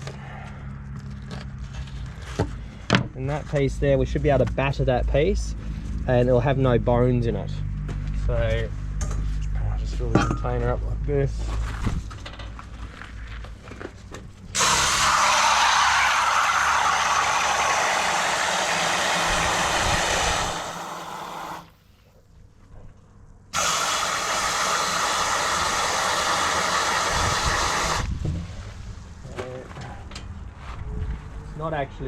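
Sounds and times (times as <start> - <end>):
water gushing from a tap: 14.6 - 21.6.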